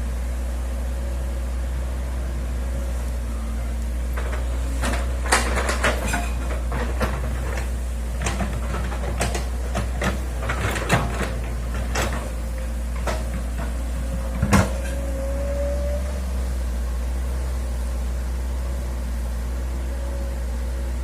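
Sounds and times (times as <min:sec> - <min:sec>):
excavator engine humming: 0:00.0 - 0:21.0
excavator bucket clanking: 0:04.1 - 0:15.1.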